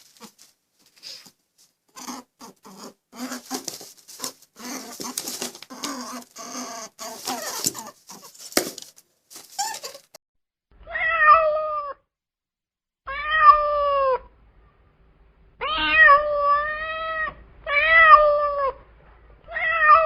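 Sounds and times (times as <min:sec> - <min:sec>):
scratchy scuffling noises: 0:00.0 - 0:02.1, 0:03.2 - 0:10.2.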